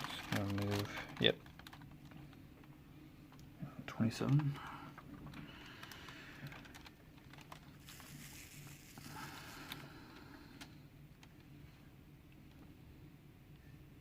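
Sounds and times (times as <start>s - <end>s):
soft rustle: 5.7s - 10.0s.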